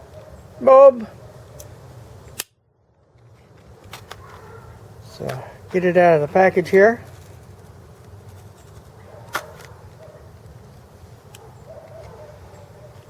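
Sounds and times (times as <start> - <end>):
sharp click: 2.3 - 2.6.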